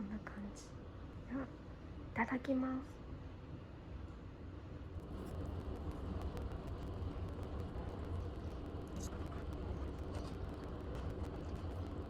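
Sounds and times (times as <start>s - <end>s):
steady low hum: 4.8s - 12.0s.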